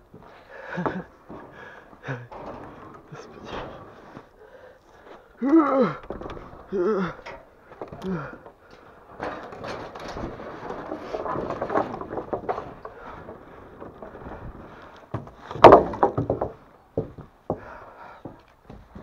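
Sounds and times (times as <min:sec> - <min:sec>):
wood rustling and scraping: 0:00.0 - 0:19.0
wooden clatter: 0:00.1 - 0:19.0
wooden knocks: 0:06.0 - 0:19.0.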